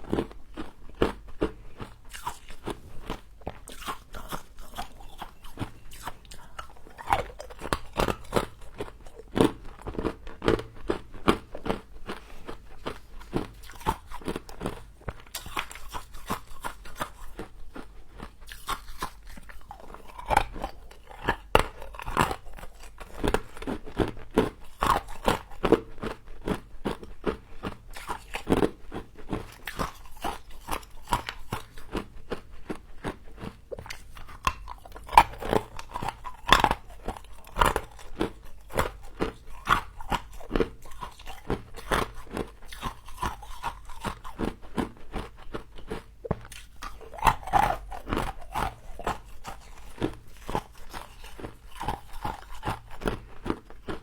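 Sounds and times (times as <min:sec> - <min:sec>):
crunchy biting and chewing: 0:00.0 - 0:54.0.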